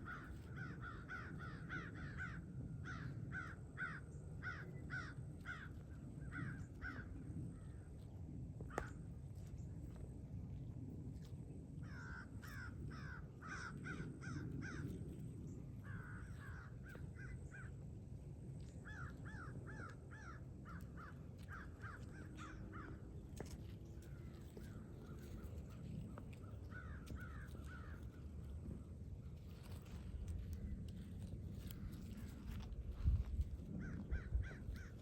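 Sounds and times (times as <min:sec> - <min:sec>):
crows cawing: 0:00.0 - 0:07.7, 0:08.7 - 0:09.0, 0:11.8 - 0:15.1, 0:15.8 - 0:17.8, 0:18.8 - 0:28.8, 0:31.2 - 0:35.0
low rumble: 0:00.0 - 0:35.0.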